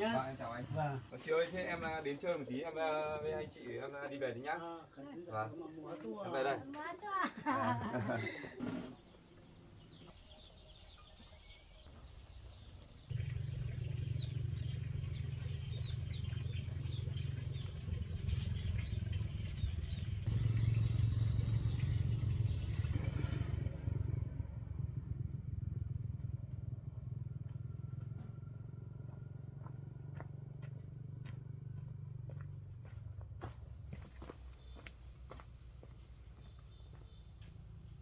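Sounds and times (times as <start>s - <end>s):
small motorbike engine: 13.0s - 33.2s.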